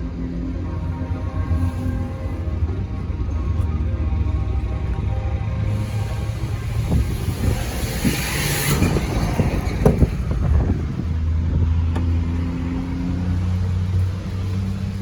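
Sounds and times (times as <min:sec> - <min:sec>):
truck diesel engine running: 0:00.0 - 0:15.0
burst of hiss: 0:05.7 - 0:09.5.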